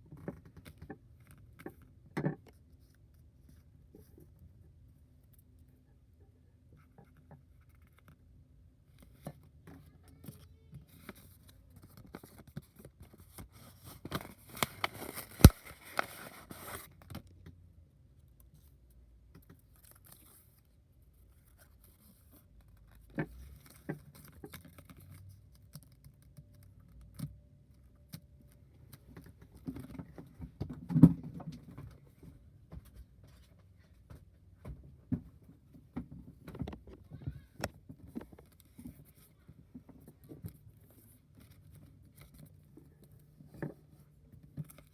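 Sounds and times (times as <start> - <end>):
packaging rustling: 14.0 - 16.9
packaging taps and clicks: 14.1 - 16.8.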